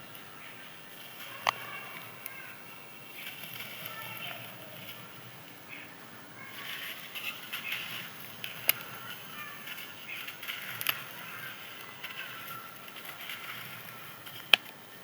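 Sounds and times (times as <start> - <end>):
sand crumbling and crunching: 0.9 - 14.8
sharp snaps: 1.2 - 2.5, 6.6 - 14.8.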